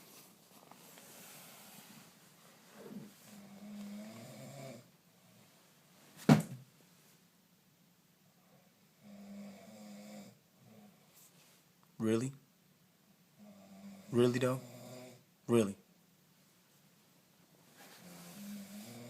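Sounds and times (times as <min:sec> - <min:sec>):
person snoring: 0:03.3 - 0:04.9, 0:18.0 - 0:19.0.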